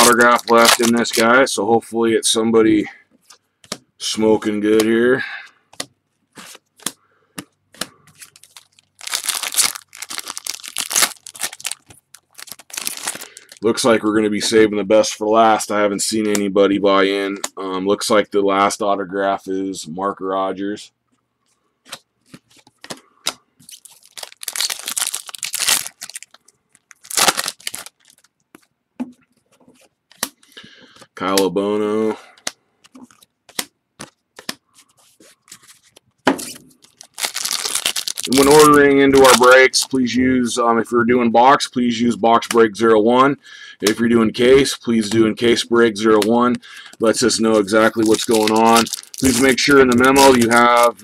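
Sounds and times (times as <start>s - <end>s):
cards clicking and rustling: 0.0s - 1.3s, 5.7s - 13.6s, 21.8s - 28.7s, 29.4s - 31.5s, 32.4s - 36.1s, 46.1s - 51.0s
wrapper crinkling and tearing: 0.0s - 1.4s, 8.2s - 13.7s, 23.6s - 28.3s, 36.8s - 39.9s, 46.8s - 51.0s.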